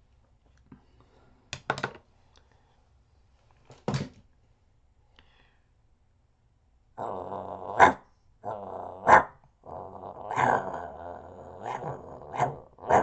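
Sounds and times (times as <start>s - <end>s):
man growling like a dog: 7.0s - 13.0s
man barking like a dog: 7.7s - 8.0s, 9.0s - 9.3s, 11.6s - 13.0s.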